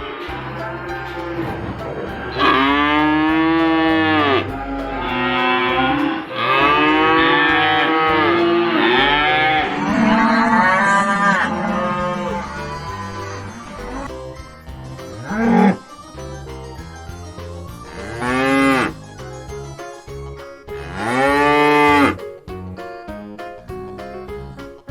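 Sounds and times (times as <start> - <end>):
low background music: 0.0 - 24.9
cow mooing: 2.3 - 14.1.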